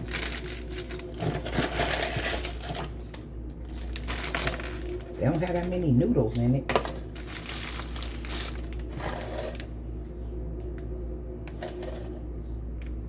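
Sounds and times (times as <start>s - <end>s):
dry pasta rattling: 0.0s - 9.7s
packaging crinkling: 0.0s - 9.7s.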